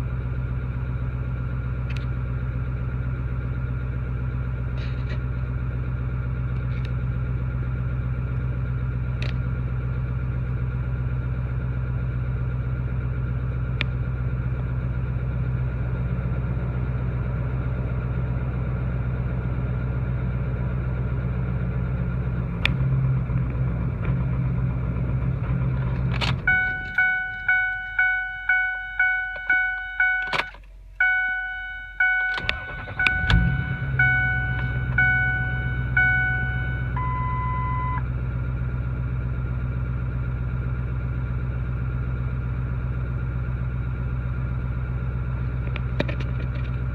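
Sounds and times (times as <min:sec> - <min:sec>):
diesel engine idling unevenly: 0:00.0 - 0:46.9
dashboard warning chime: 0:26.5 - 0:38.0
engine cranking and restarting: 0:32.0 - 0:37.8.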